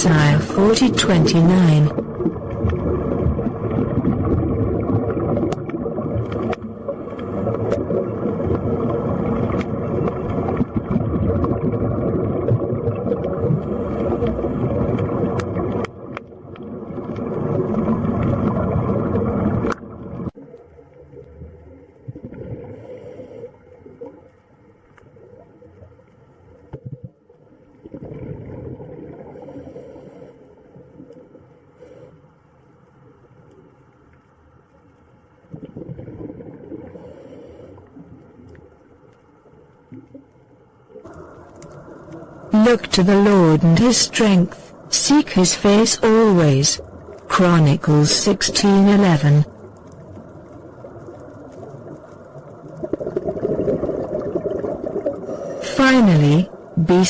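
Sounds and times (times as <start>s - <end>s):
water rushing: 0.0s - 16.1s.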